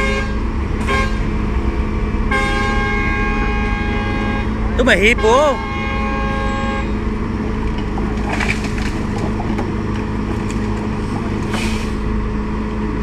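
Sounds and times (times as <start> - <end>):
truck horn: 0.0 - 1.5, 2.2 - 7.3
truck diesel engine running: 0.0 - 13.0
short air hisses: 11.5 - 12.0.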